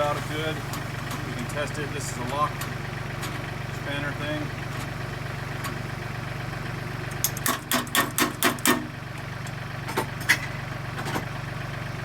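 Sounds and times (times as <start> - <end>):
tractor diesel engine idling: 0.0 - 12.0
sharp metallic clanks: 7.1 - 8.9
spanner clicks: 7.1 - 10.4.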